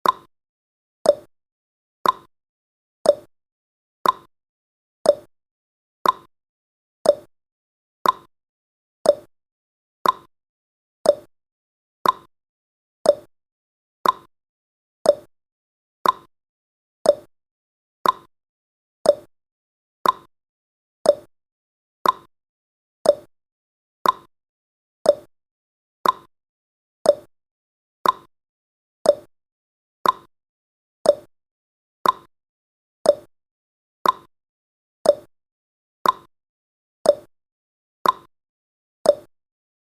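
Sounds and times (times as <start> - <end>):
timer ticking: 0.0 - 0.3, 1.0 - 1.3, 2.0 - 2.3, 3.0 - 3.3, 4.0 - 4.3, 5.1 - 5.3, 6.0 - 6.3, 7.0 - 7.3, 8.0 - 8.3, 9.0 - 9.3, 10.0 - 10.3, 11.0 - 11.3, 12.0 - 12.3, 13.0 - 13.3, 14.0 - 14.3, 15.0 - 15.3, 16.0 - 16.3, 17.0 - 17.3, 18.0 - 18.3, 19.0 - 19.3, 20.0 - 20.3, 21.0 - 21.3, 22.0 - 22.3, 23.0 - 23.3, 24.0 - 24.3, 25.0 - 25.3, 26.0 - 26.3, 27.0 - 27.3, 28.0 - 28.3, 29.0 - 29.3, 30.0 - 30.3, 31.0 - 31.3, 32.0 - 32.3, 33.0 - 33.3, 34.0 - 34.3, 35.0 - 35.3, 36.0 - 36.3, 37.0 - 37.3, 38.0 - 38.3, 39.1 - 39.3.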